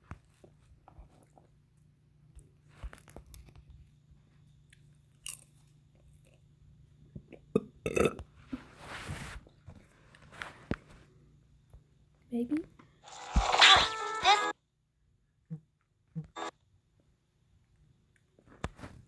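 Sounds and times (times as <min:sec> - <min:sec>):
person chewing crunchy food: 0:04.7 - 0:06.4.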